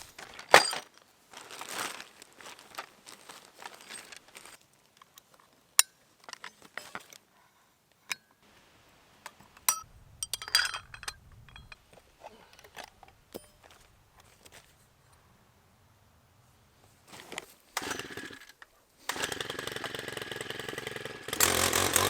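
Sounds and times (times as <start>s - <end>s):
metal tools clinking: 9.6s - 14.8s.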